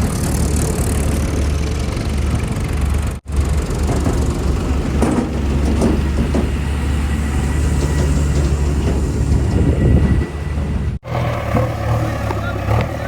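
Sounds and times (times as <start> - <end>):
heavy diesel engine humming: 0.0 - 13.0
rattles and knocks: 2.2 - 10.9.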